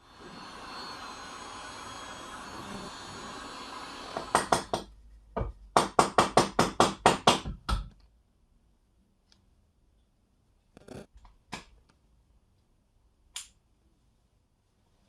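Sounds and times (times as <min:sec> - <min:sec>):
workshop noise: 0:00.0 - 0:07.8.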